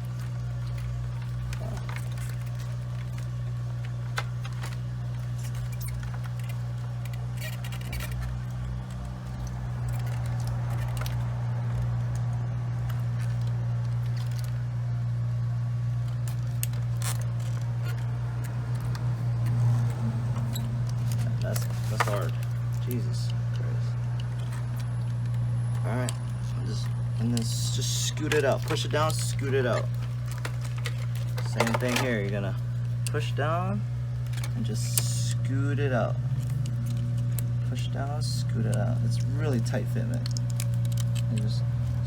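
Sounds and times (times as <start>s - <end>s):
steady low hum: 0.0s - 42.0s
plastic connectors clicking: 16.0s - 33.4s, 36.2s - 42.0s.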